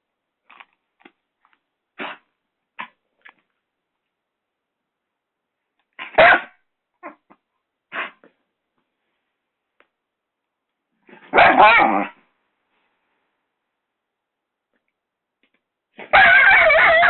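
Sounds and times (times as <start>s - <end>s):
puppy barking: 6.0s - 7.2s, 11.1s - 12.2s, 16.0s - 17.0s.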